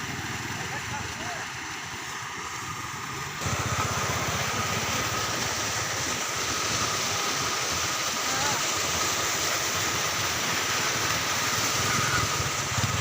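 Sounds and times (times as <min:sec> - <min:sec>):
motorcycle engine idling: 0:03.4 - 0:05.8, 0:12.6 - 0:13.0.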